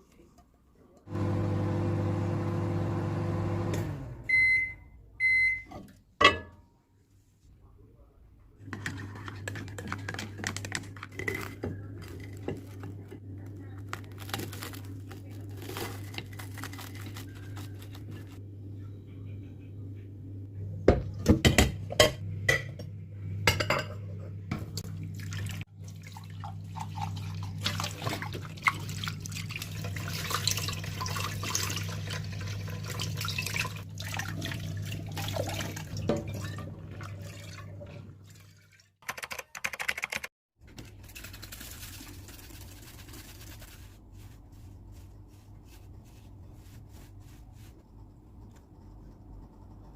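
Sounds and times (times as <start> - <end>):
water running and dripping: 25.1 - 38.9.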